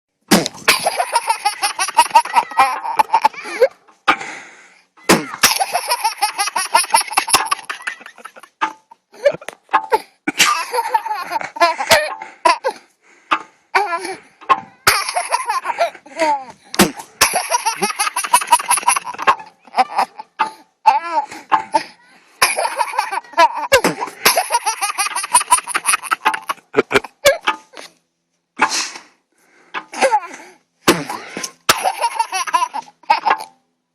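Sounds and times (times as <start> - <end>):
baby laughing: 0.7 - 3.8, 5.1 - 8.6, 9.2 - 12.8, 13.8 - 14.2, 14.8 - 27.4, 30.0 - 30.4, 31.0 - 33.5.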